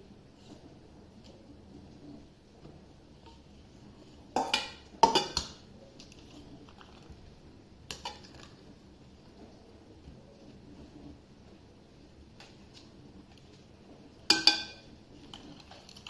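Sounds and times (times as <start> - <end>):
kitchen utensils and dishes clattering: 4.4 - 5.6, 14.3 - 16.0.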